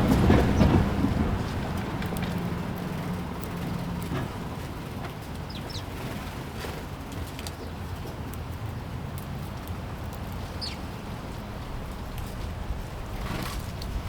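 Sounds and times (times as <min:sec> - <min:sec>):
steady low rumble: 0:00.0 - 0:05.0
sparrows chirping: 0:05.4 - 0:06.2, 0:10.4 - 0:11.1.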